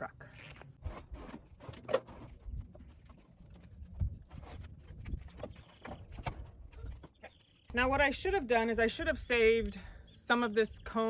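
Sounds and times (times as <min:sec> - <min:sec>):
wooden beehive knocking and scraping: 0:00.8 - 0:07.8.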